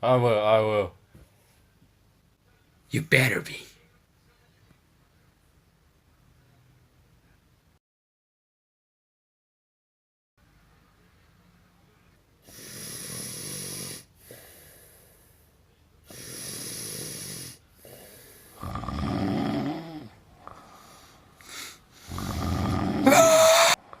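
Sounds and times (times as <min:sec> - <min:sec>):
person snoring: 0:12.5 - 0:15.3, 0:16.1 - 0:24.0.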